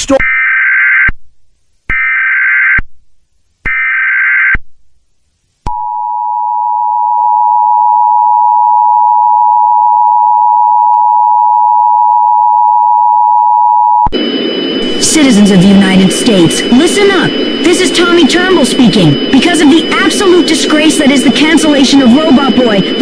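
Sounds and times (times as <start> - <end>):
steady two-tone attention signal: 5.7 - 23.0
buzzy digital data bursts: 14.2 - 23.0.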